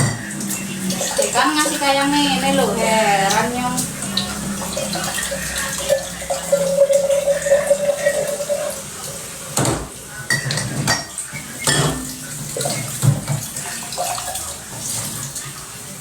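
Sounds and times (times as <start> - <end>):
dishes and cutlery clattering: 0.0 - 1.3, 4.2 - 15.5
running water: 0.0 - 16.0
steady pitched tone: 0.3 - 8.6.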